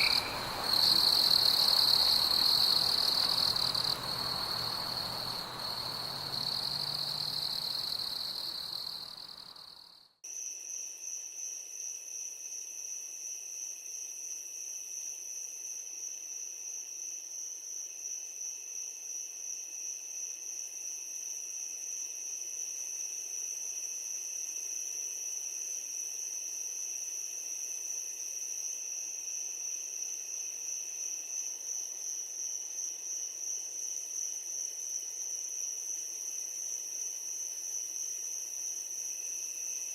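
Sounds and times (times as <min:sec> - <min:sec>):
crickets trilling: 0:00.0 - 0:09.8
high pulsing insect trill: 0:00.0 - 0:39.9.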